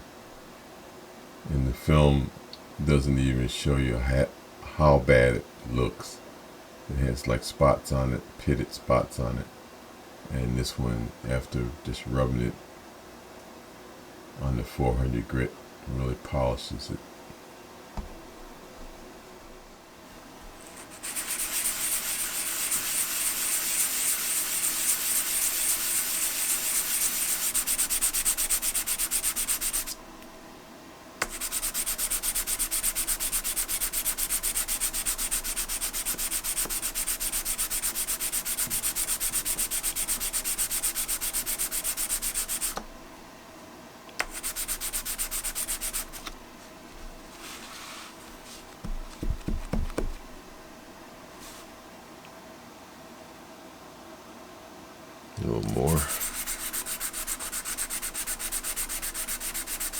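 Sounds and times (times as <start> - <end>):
metal rubbed on abrasive paper: 20.6 - 30.0, 31.2 - 42.8, 44.2 - 46.3, 55.7 - 59.9.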